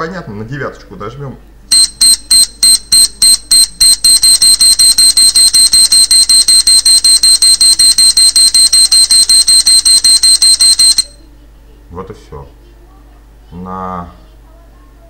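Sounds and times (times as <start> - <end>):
high-pitched timer beeps: 1.7 - 11.2.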